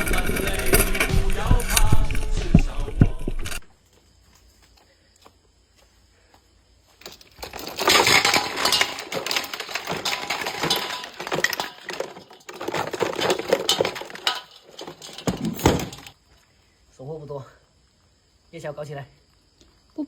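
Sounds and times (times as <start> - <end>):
hard objects clattering together: 0.0 - 3.7, 7.0 - 16.2.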